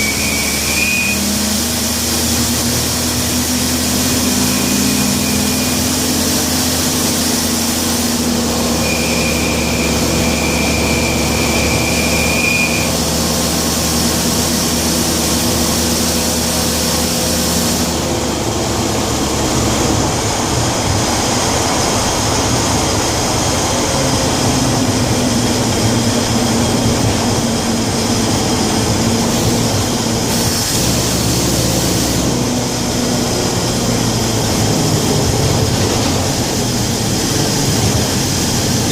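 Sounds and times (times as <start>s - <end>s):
thin high whine: 0.0s - 18.4s
van engine and road noise: 0.0s - 38.9s.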